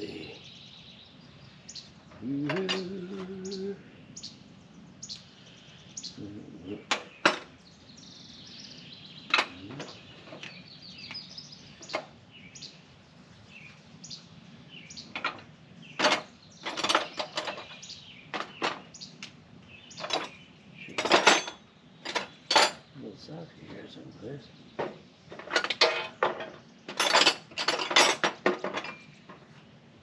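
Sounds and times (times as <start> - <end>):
bird chirping: 0.0 - 27.2, 28.7 - 29.8
metal tools clinking in a toolbox: 16.0 - 17.8, 20.0 - 20.4, 21.0 - 22.8, 25.3 - 29.4.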